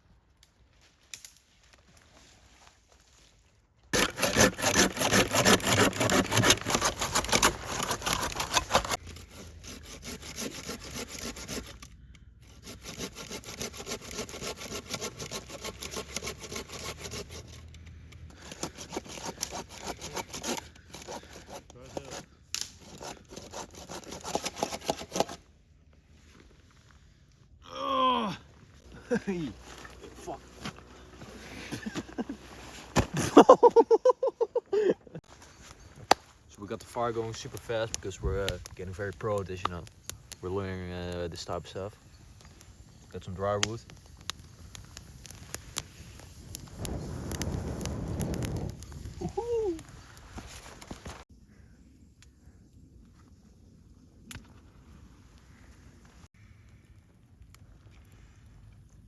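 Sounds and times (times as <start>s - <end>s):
hand saw cutting wood: 4.0s - 25.4s, 29.6s - 33.9s, 36.1s - 46.3s.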